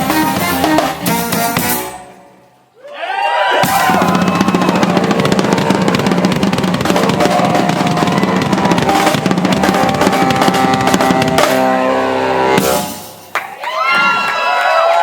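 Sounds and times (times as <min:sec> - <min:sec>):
rock band playing: 0:00.0 - 0:02.5, 0:03.6 - 0:13.4
fast drumming: 0:03.6 - 0:11.9.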